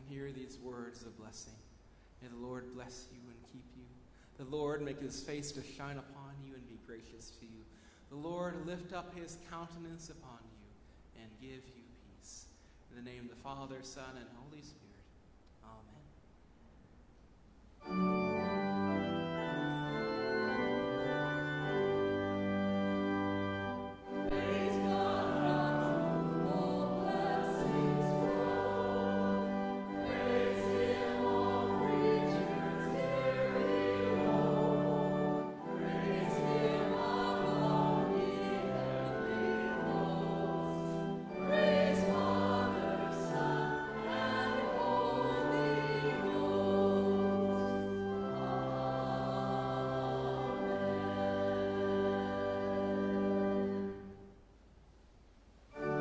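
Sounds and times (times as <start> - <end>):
organ accompaniment: 17.8 - 54.3, 55.7 - 56.0
choir singing sustained chords: 17.8 - 54.4, 55.7 - 56.0.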